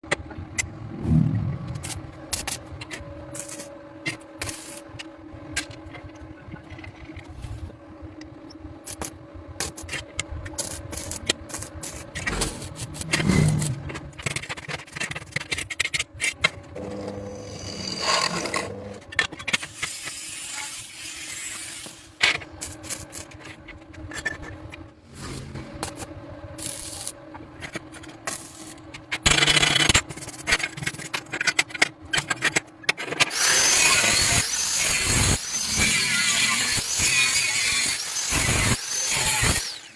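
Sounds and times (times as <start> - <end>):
steady low hum: 0.0 - 19.6
long rasping scrape: 16.8 - 19.0
tools scraping and knocking: 27.6 - 33.3.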